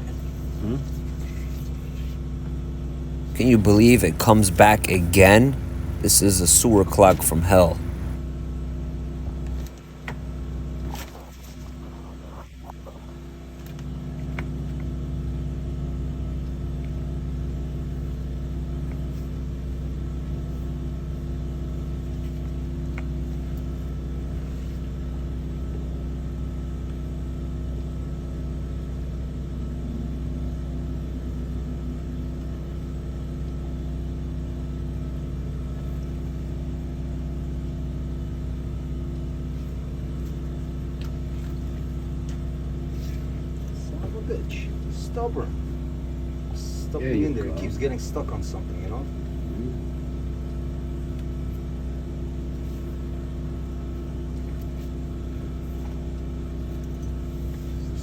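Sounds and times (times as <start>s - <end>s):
water jetter engine humming: 3.4s - 8.2s.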